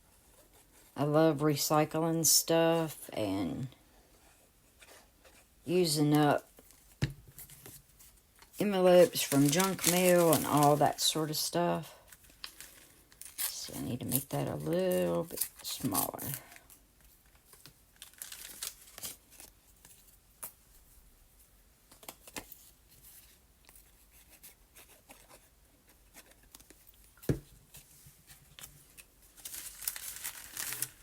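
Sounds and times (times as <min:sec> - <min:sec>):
paper rustling and crinkling: 0:06.5 - 0:11.4, 0:12.0 - 0:20.5, 0:21.9 - 0:31.0.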